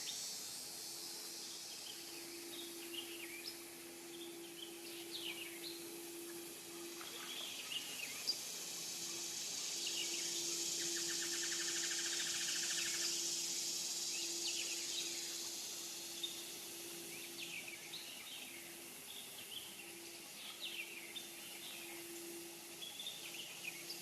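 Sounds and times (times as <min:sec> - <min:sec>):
faint low hum: 0:00.0 - 0:13.6
high insect drone: 0:00.0 - 0:24.0.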